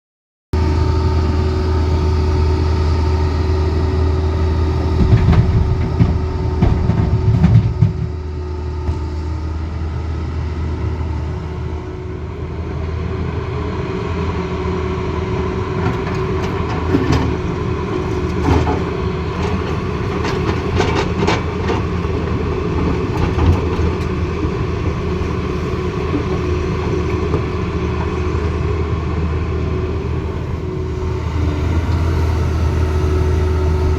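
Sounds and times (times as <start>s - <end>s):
excavator diesel engine running: 0.6s - 33.9s
knocks and clatter: 4.9s - 8.2s.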